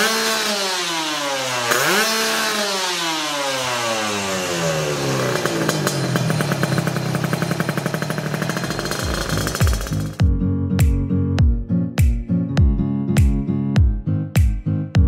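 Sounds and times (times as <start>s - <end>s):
motorcycle engine revving and idling: 0.0s - 10.3s
music: 9.3s - 15.0s.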